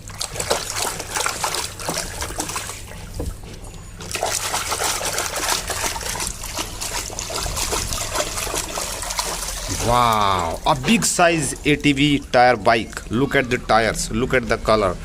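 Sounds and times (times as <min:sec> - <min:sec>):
water trickling and splashing: 0:00.0 - 0:14.8.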